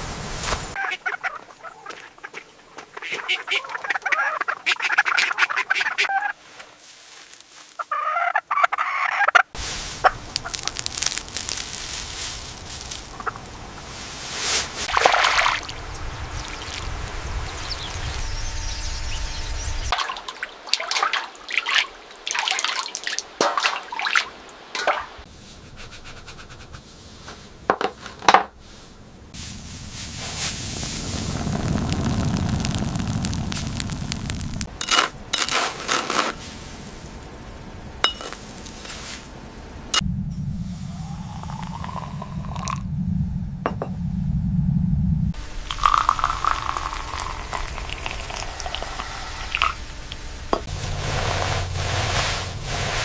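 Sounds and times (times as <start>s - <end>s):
chickens and ducks calling: 0.8s - 6.3s, 7.8s - 10.2s.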